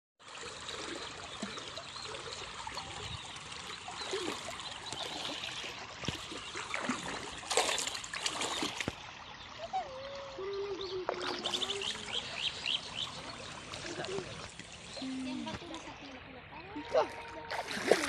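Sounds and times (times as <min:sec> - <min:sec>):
river water running: 0:00.2 - 0:18.0.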